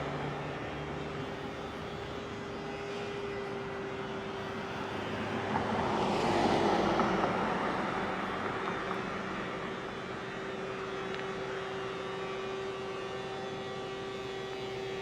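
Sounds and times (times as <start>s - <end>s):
vehicle passing by: 5.3s - 9.3s.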